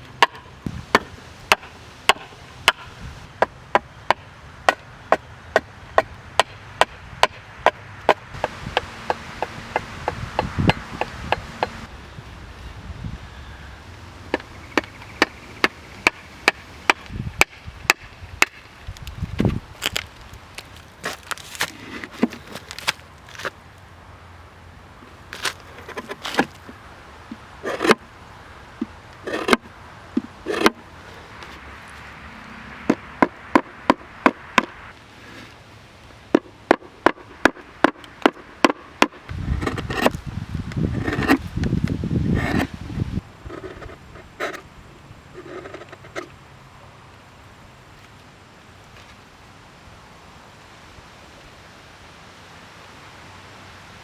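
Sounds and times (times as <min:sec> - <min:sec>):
steel edge striking wood: 0:00.2 - 0:04.8, 0:05.6 - 0:11.9, 0:29.3 - 0:30.8.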